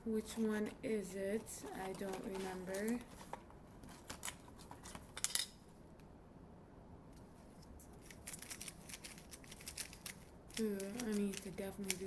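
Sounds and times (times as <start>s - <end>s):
speed cube plastic clicks: 8.2s - 12.0s.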